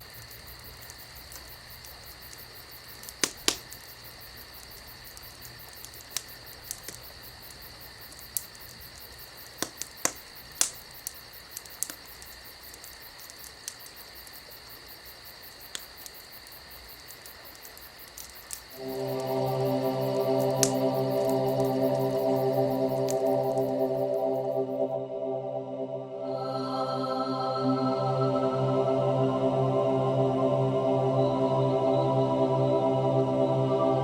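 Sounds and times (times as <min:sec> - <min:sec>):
sharp pops from fire: 0:00.0 - 0:24.6
wood fire crackling: 0:00.0 - 0:24.8.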